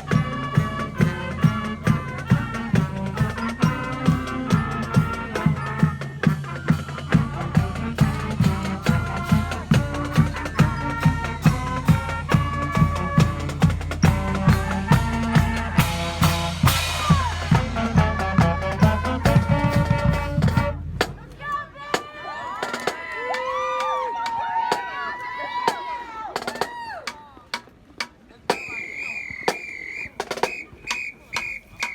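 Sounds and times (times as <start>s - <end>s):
brass holding chords: 0.0s - 21.2s
steady drum beat: 0.0s - 23.0s, 25.7s - 31.9s.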